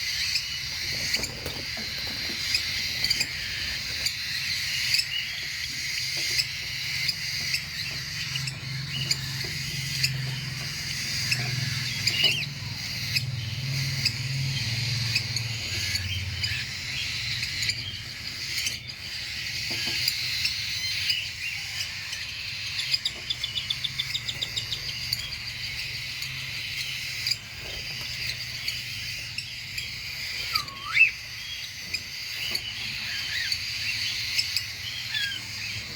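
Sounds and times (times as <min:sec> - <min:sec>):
bird trill: 0:00.0 - 0:35.9
cockatiels chattering and chirping: 0:00.0 - 0:35.9
swooping whistle: 0:30.5 - 0:31.2.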